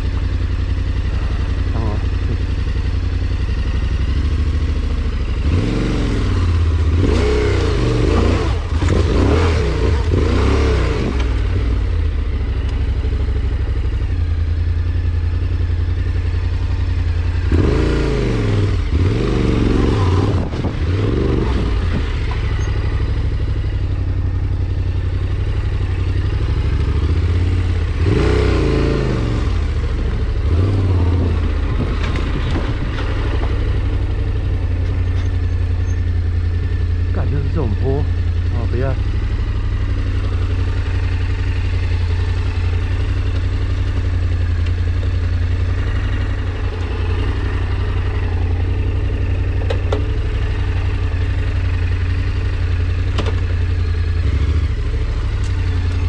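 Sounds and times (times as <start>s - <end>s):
engine revving under load: 3.9s - 12.2s, 17.4s - 23.8s, 25.7s - 36.2s, 36.8s - 56.0s.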